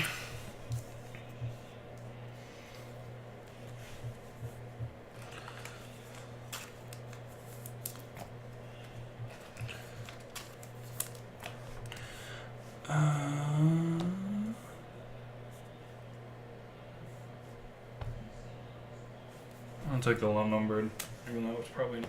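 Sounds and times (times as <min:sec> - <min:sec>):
low steady hum: 0:00.0 - 0:22.0
cards clicking and rustling: 0:05.2 - 0:12.0.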